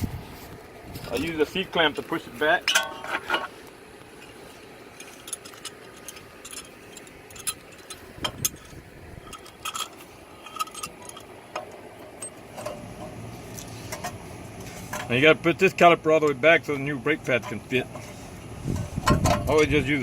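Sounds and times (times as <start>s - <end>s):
metallic clicks and clinks: 4.2s - 14.2s.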